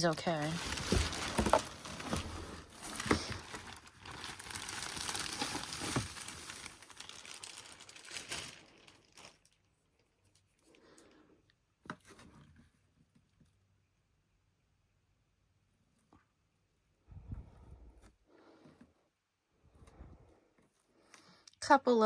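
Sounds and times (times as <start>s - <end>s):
packaging crinkling and tearing: 0.0s - 10.4s.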